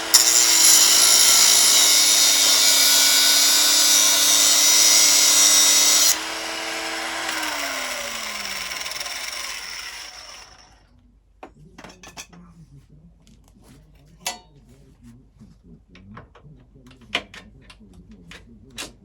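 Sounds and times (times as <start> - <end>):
angle grinder cutting steel: 0.0 - 10.8
grinder motor whine: 0.0 - 10.8.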